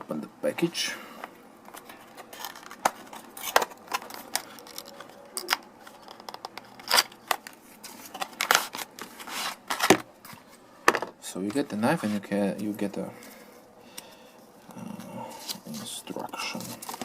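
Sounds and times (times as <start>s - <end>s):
packaging rustling: 1.6s - 10.4s, 14.8s - 17.0s.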